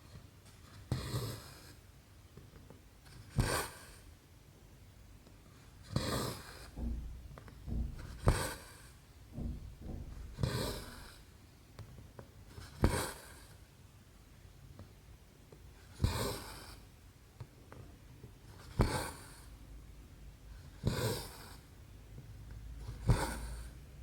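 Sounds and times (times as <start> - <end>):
faint needle taps: 6.7 - 8.7, 9.3 - 11.2.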